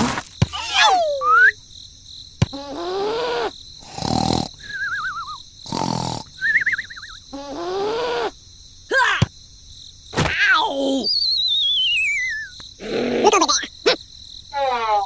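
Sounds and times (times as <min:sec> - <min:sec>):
wavering whistle tones: 0:00.8 - 0:01.6, 0:04.6 - 0:05.4, 0:06.4 - 0:07.2, 0:11.0 - 0:12.6.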